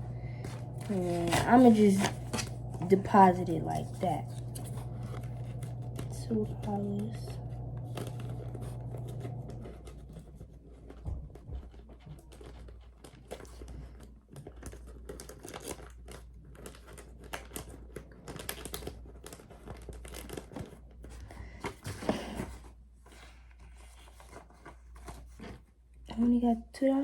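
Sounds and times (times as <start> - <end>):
paper bills rustling: 0.0 - 11.0.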